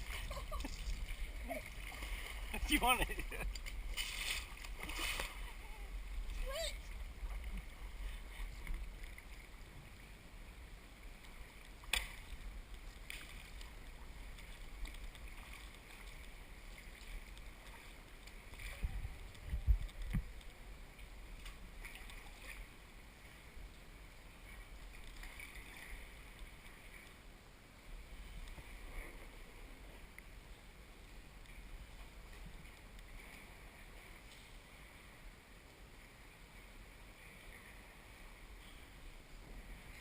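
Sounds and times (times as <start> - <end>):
paddle splashing in water: 0.0 - 5.6, 11.2 - 20.4
water lapping at hull: 0.0 - 30.2.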